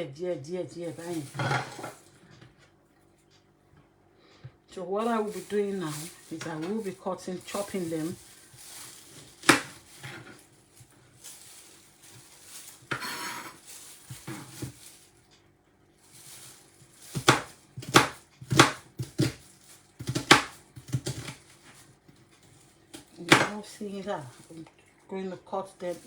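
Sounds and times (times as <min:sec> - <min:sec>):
scraping rustle: 0:00.9 - 0:02.2, 0:05.0 - 0:15.4, 0:16.0 - 0:24.7, 0:25.7 - 0:26.0
knife chopping on cutting board: 0:09.1 - 0:10.4, 0:12.9 - 0:13.6, 0:17.0 - 0:21.8, 0:22.9 - 0:23.6.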